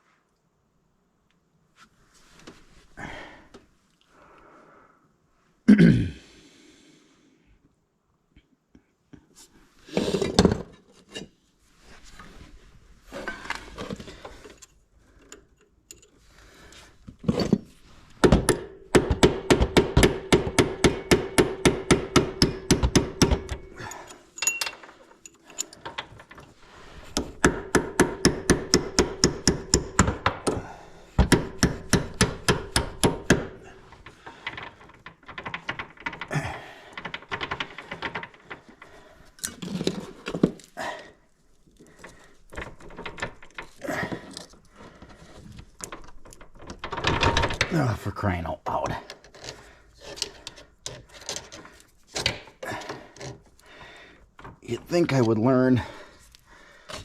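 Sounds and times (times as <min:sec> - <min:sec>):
hammer striking metal punch: 0:19.0 - 0:23.6.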